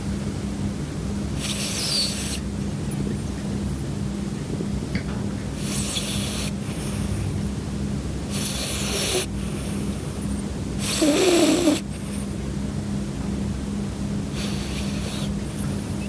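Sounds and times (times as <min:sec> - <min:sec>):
puppy snoring: 0:01.4 - 0:03.7, 0:05.5 - 0:07.3, 0:08.3 - 0:12.4, 0:14.3 - 0:16.0.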